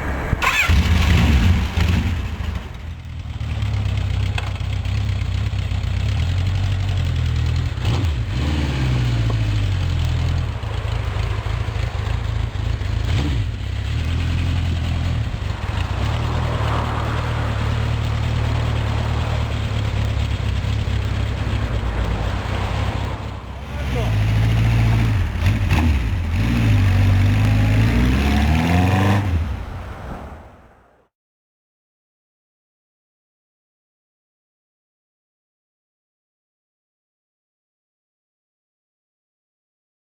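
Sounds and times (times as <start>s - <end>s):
motorcycle engine revving: 0.0s - 30.3s
motorcycle engine idling: 0.1s - 27.8s.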